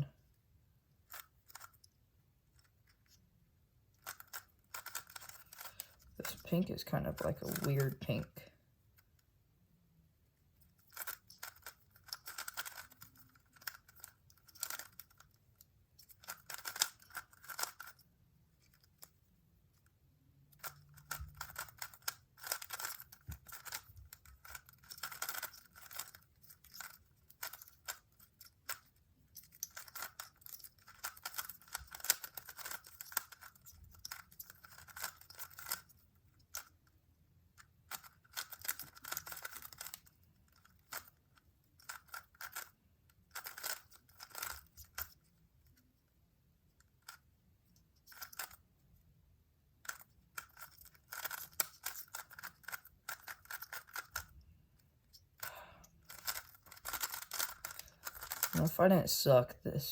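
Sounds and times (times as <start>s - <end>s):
puzzle cube plastic clicking: 1.0s - 3.2s, 3.9s - 9.3s, 10.6s - 19.2s, 20.5s - 46.0s, 46.7s - 48.7s, 49.8s - 58.6s.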